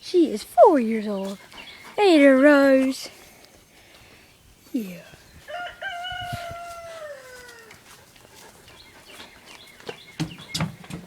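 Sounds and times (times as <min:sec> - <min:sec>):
rooster crowing: 0:05.5 - 0:07.8.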